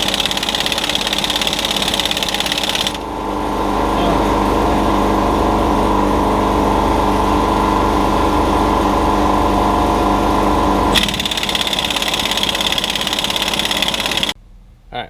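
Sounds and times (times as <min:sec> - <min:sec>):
impact wrench hammering: 0:00.0 - 0:03.0, 0:11.0 - 0:14.4.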